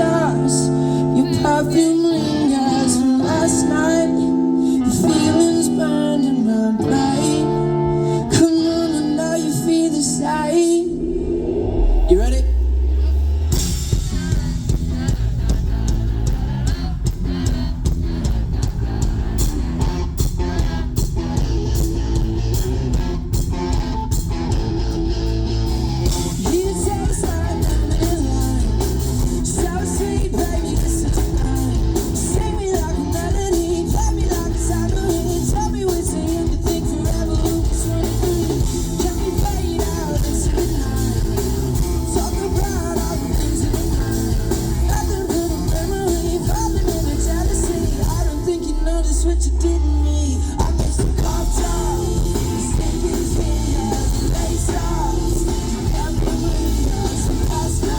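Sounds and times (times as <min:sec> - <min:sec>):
person singing: 0:00.0 - 0:13.0, 0:26.0 - 0:57.9
bass guitar: 0:00.0 - 0:57.9
drums: 0:00.0 - 0:57.9
electric guitar: 0:00.0 - 0:57.9.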